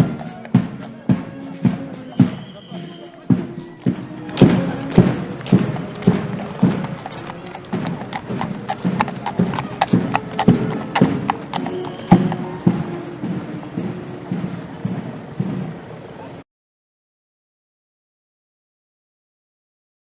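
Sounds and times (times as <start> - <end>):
sharp knocks like hoofbeats: 0.0 - 16.0
trumpet fanfare: 9.5 - 13.2.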